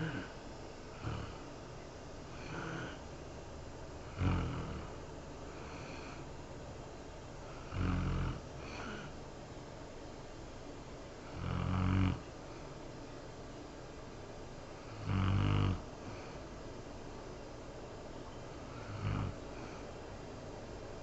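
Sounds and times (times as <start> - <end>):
woman snoring: 0.0 - 1.4, 2.3 - 3.0, 4.1 - 5.0, 7.6 - 9.2, 11.3 - 12.2, 14.9 - 16.3, 18.7 - 19.8
faint breaths: 0.0 - 10.3, 11.1 - 13.0, 14.0 - 21.0.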